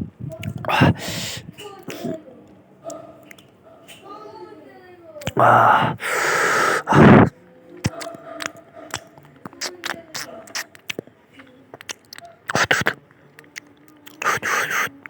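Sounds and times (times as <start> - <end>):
loud noisy mouth bursts: 0.6 - 1.5, 5.4 - 7.3, 12.5 - 13.0, 14.2 - 14.9
person chewing: 6.9 - 11.1, 11.7 - 15.0.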